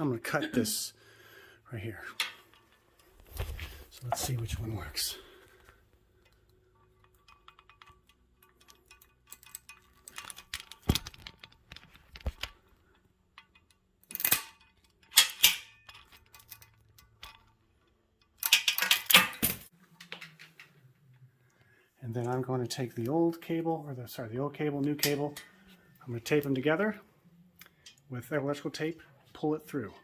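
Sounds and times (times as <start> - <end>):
metal hand tools clinking: 6.2 - 12.3.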